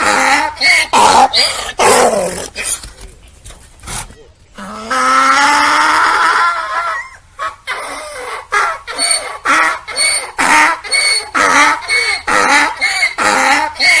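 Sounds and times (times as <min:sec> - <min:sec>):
donkey braying: 0:04.6 - 0:14.0.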